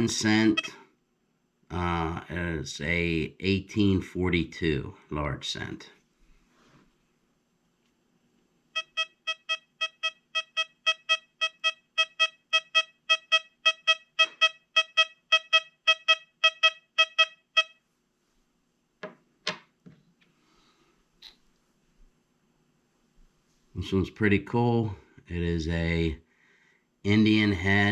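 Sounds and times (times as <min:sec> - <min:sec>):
metal detector beeping: 0:00.0 - 0:00.8, 0:08.8 - 0:17.8.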